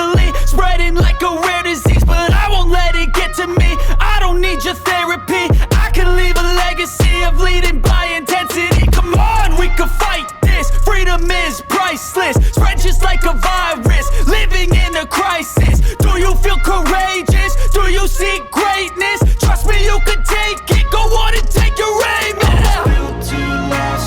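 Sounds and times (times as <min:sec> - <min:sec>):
hip hop music with deep bass: 0:00.0 - 0:24.0
rapping over a beat: 0:00.0 - 0:24.0.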